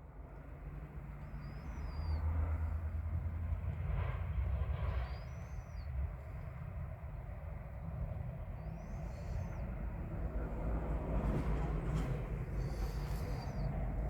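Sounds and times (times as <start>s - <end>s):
bird whistling glides: 1.2s - 2.8s, 4.8s - 6.2s, 8.4s - 10.0s, 11.9s - 14.0s.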